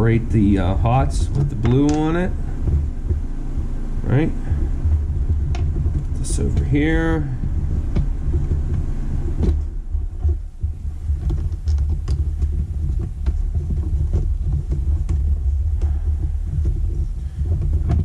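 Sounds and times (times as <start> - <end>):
steady low rumble: 0.0 - 18.0
small clicks and taps: 7.4 - 18.0.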